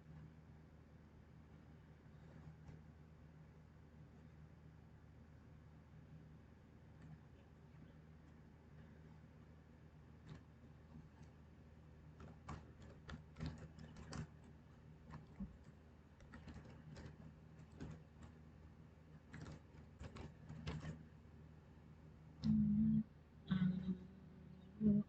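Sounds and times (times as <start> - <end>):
keyboard typing: 12.2 - 18.4, 19.2 - 21.1
short low-pitched tones: 22.4 - 25.0.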